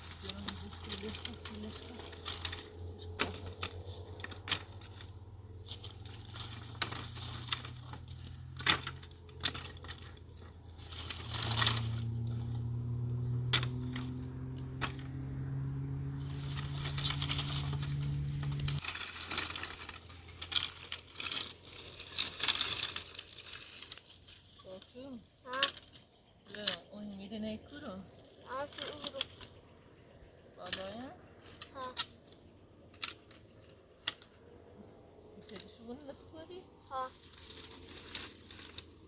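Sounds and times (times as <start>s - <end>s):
low steady hum: 0.0s - 25.2s
small hard objects clinking: 0.0s - 26.9s, 28.2s - 29.6s.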